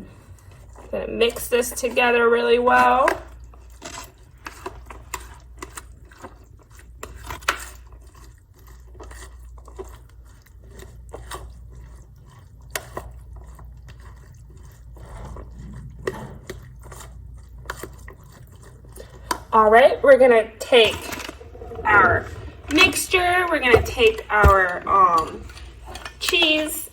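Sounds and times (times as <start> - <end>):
squelching wet mixture: 0.0 - 26.9
utensil scraping bowl: 0.0 - 26.9.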